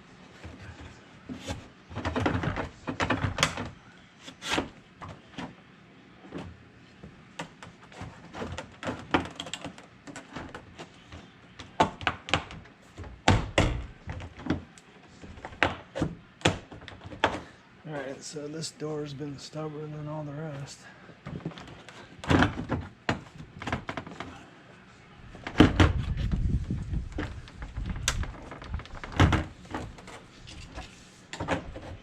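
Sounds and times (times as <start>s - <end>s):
plastic panel clicking and creaking: 7.4s - 12.7s, 26.9s - 32.0s.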